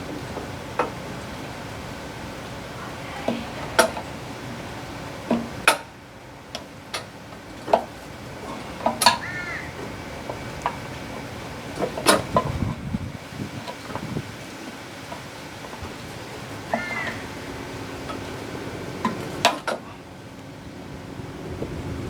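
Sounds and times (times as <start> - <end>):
short animal call: 9.2 - 9.8, 16.7 - 17.3.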